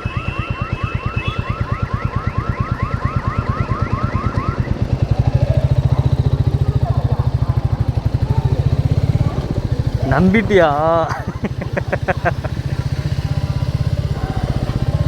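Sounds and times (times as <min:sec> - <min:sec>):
electronic alarm chirps: 0:00.0 - 0:07.4
motorcycle engine idling: 0:00.0 - 0:15.0.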